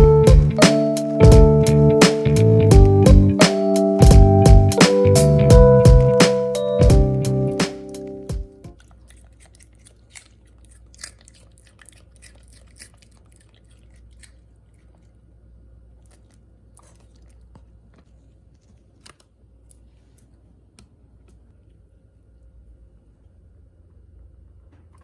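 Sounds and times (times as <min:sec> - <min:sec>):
background music: 0:00.0 - 0:08.7.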